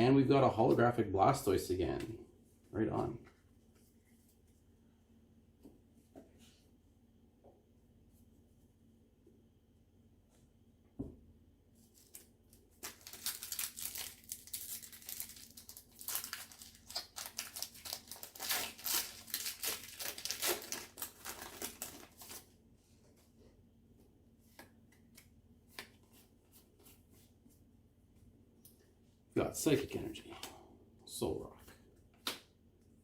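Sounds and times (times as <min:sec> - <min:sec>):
foil pack tearing and crinkling: 0:12.0 - 0:22.4.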